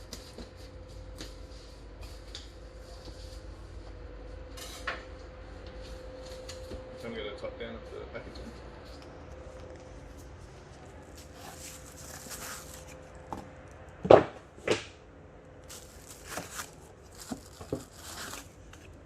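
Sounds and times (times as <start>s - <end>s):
cardboard rustling and scraping: 11.1s - 13.2s, 15.7s - 18.9s.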